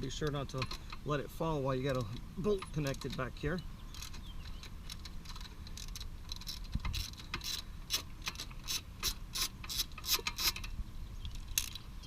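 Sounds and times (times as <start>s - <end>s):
ratchet clicking: 3.9s - 10.7s.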